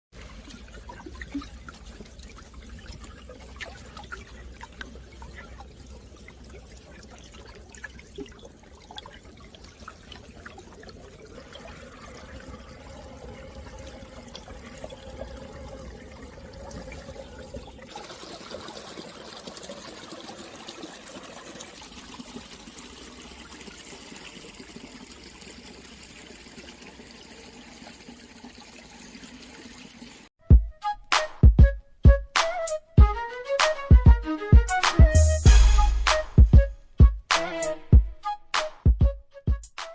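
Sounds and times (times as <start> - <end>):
water trickling under ice: 0.1 - 30.3.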